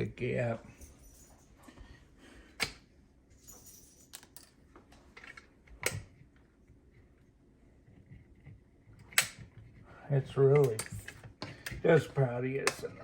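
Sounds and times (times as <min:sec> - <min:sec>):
tools clicking and tapping: 0:10.5 - 0:11.8, 0:12.6 - 0:13.0.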